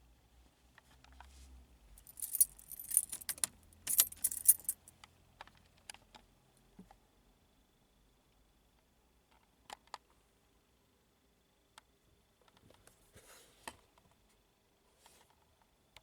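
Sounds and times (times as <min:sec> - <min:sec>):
car keys jangling: 0:02.0 - 0:04.9.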